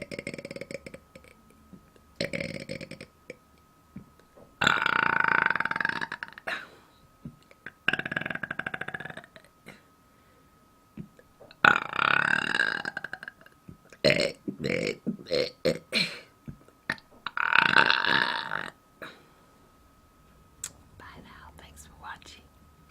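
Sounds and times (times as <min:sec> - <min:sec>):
woman burping: 0:04.6 - 0:06.8, 0:11.6 - 0:19.2.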